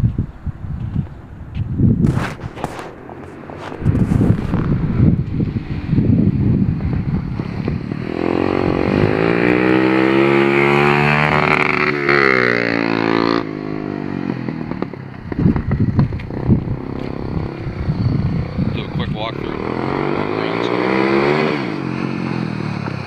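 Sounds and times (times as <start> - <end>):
exhaust pops: 2.0 - 8.1, 14.4 - 20.6
motorcycle engine revving: 2.0 - 23.0.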